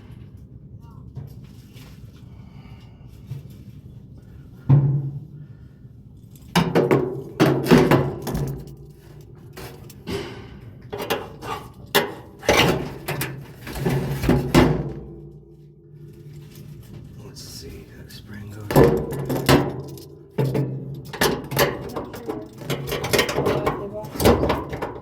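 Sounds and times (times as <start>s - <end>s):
metal clanks and knocks: 6.4s - 16.7s, 18.7s - 25.0s.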